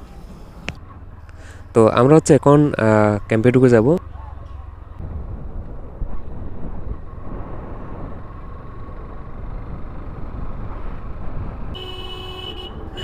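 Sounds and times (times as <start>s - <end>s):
motorcycle engine running: 4.0s - 11.8s
wind on microphone: 5.0s - 9.8s.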